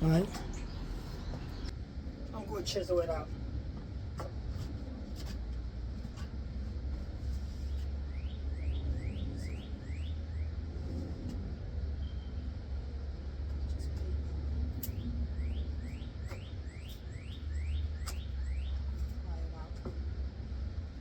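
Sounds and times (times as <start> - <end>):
bird chirping: 0.0 - 1.7, 8.1 - 10.5, 14.9 - 18.9
steady low rumble: 0.0 - 21.0.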